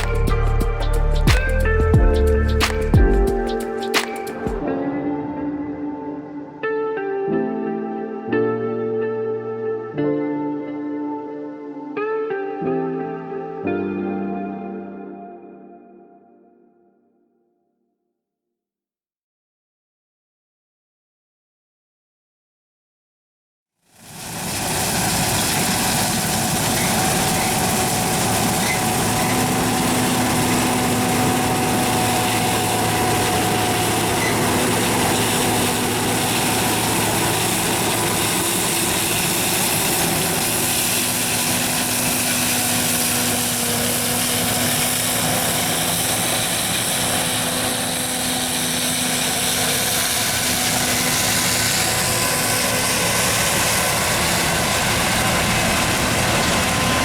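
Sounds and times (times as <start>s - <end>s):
combine harvester engine drone: 0.0s - 4.7s, 24.0s - 57.0s
machinery whining tones: 0.0s - 5.3s, 24.0s - 57.0s.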